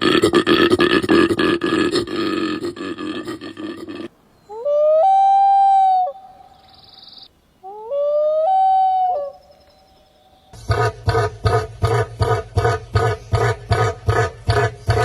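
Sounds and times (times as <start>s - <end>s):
animal calling: 0.0s - 7.0s, 10.1s - 15.0s.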